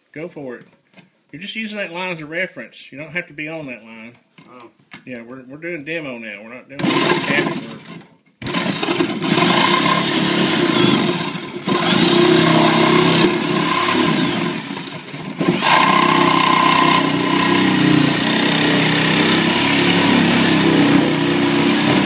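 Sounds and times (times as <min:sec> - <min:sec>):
reciprocating saw cutting drywall: 0:06.8 - 0:22.0.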